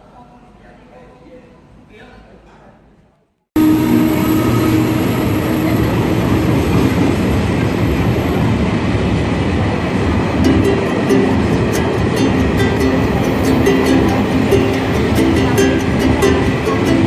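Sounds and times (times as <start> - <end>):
train wheels rumbling on track: 3.6 - 17.0.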